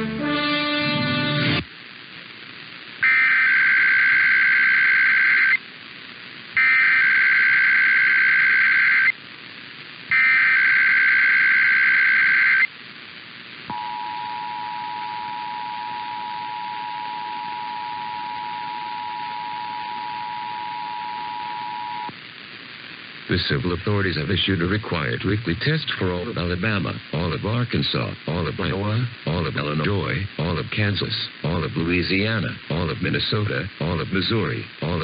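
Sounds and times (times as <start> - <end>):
screechy digital data tones: 3.0 - 5.6, 6.6 - 9.1, 10.1 - 12.7.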